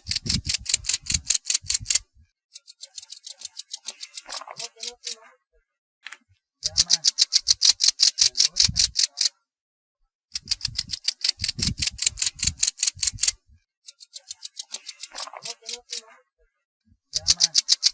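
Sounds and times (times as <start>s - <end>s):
grasshopper chirping: 0.0s - 2.0s, 2.6s - 5.2s, 6.6s - 9.3s, 10.4s - 16.0s, 17.1s - 17.9s.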